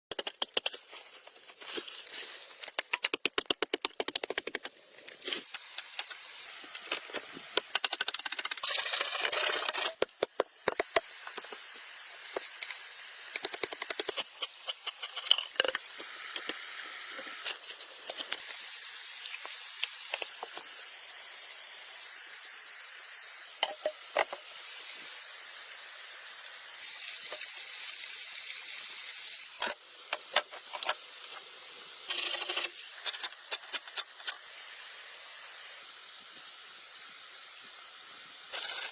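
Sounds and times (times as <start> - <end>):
falling water hiss: 10.6 - 32.1, 32.8 - 38.6.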